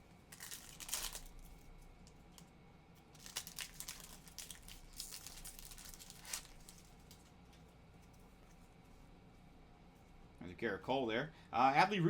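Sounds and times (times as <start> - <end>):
foil wrapper tearing: 0.3 - 1.7, 3.1 - 7.2.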